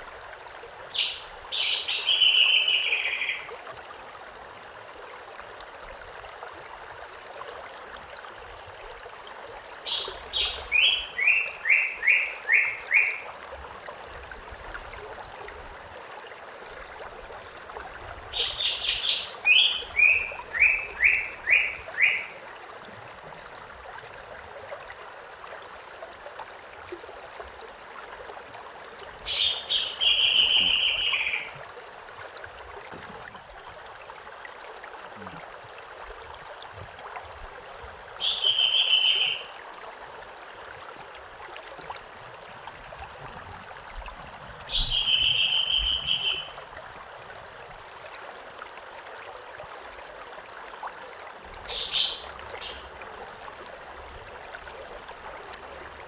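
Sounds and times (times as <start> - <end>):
stream rushing: 0.0 - 56.0
songbird singing: 0.9 - 3.5, 9.8 - 13.2, 18.3 - 22.4, 29.2 - 31.6, 38.2 - 39.5, 44.7 - 46.6, 51.6 - 53.2.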